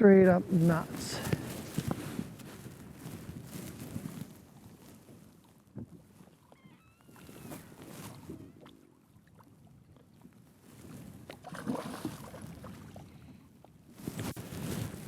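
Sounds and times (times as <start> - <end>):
wind buffeting microphone: 0.0 - 6.2.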